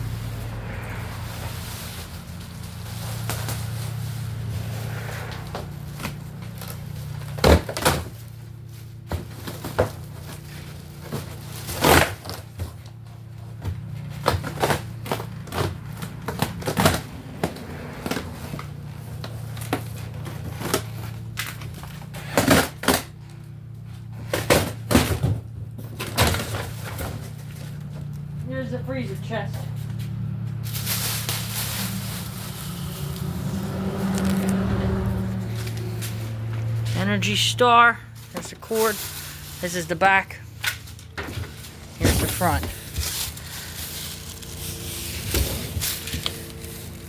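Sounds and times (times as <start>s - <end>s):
steady low hum: 0.0s - 47.0s
freezer knocking and rattling: 6.0s - 28.1s.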